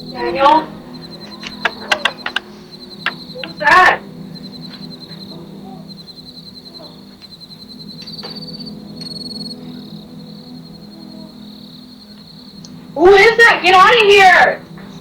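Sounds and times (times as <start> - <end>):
insects chirping: 0.0 - 15.0
low hum: 0.0 - 15.0
faint clicks: 1.2 - 3.6, 12.1 - 12.8.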